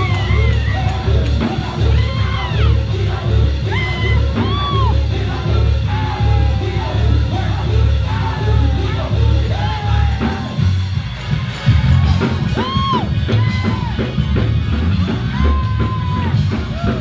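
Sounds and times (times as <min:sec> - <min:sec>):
people singing and shouting: 0:00.0 - 0:17.0
praise music with pulsing bass: 0:00.0 - 0:17.0.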